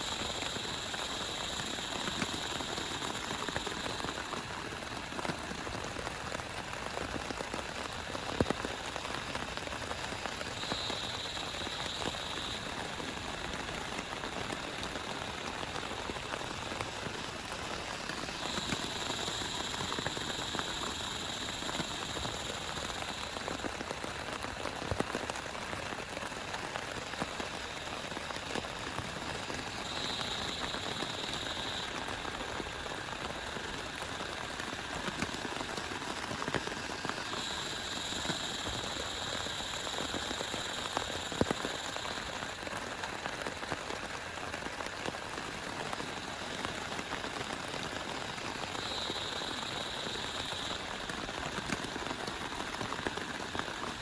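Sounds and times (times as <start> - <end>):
faint high steady tone: 0.0 - 4.7, 10.4 - 23.7, 29.2 - 35.2, 37.0 - 42.8, 48.6 - 54.0
heavy rain falling: 0.0 - 54.0
raindrops ticking: 0.0 - 54.0.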